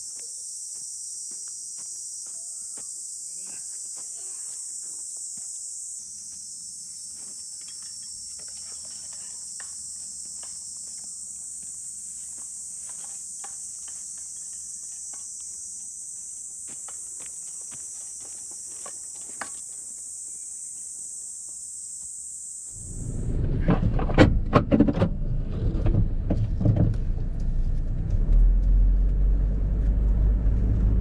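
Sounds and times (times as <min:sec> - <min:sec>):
insects trilling: 0:00.0 - 0:23.4.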